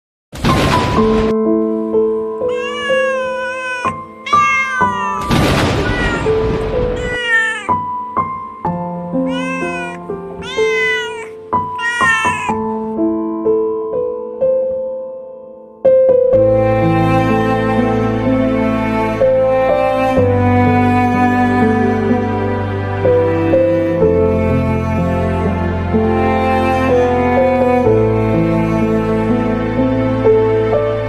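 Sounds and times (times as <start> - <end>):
slow music with held notes: 0.7 - 31.0
cat meowing: 2.4 - 7.9, 9.2 - 12.8.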